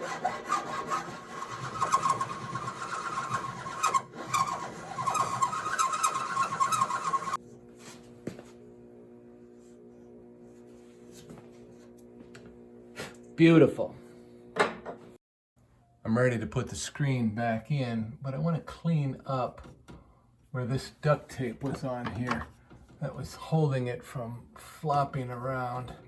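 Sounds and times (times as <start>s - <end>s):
hand file rasping on metal: 0.0s - 7.4s.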